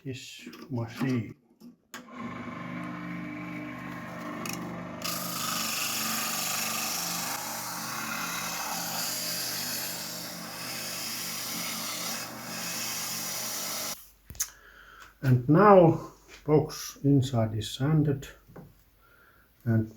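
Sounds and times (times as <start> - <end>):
power sander motor hum: 2.0 - 14.0
rasping wood sanding: 5.1 - 14.0.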